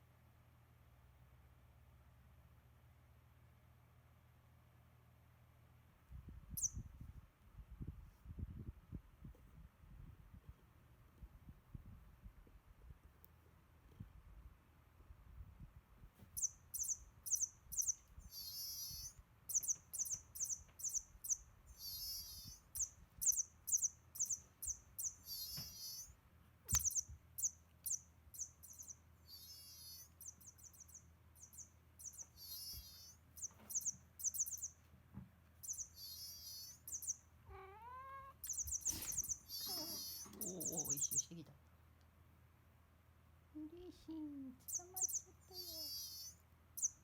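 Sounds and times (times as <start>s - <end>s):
toy mouse squeaking: 16.4s - 26.1s, 26.7s - 34.7s, 35.6s - 37.2s, 38.4s - 41.4s, 44.6s - 47.0s
cat meowing: 37.5s - 38.4s, 39.5s - 40.4s.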